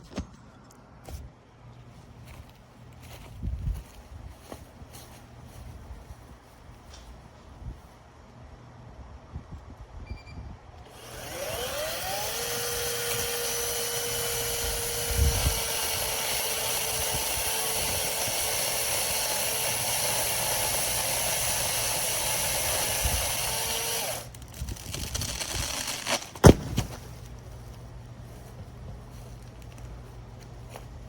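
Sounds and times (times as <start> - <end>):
chainsaw cutting tree limb: 10.9 - 27.0.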